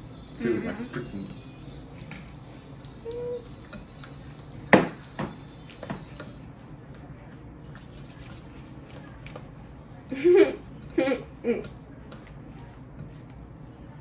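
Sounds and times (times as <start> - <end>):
kitchen knocks: 4.8 - 6.0.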